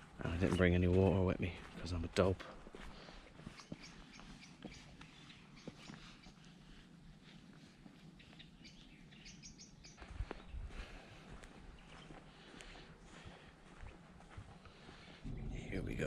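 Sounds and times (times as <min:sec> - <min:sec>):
small birds chirping: 0:00.0 - 0:16.0
low thumps: 0:15.2 - 0:16.0.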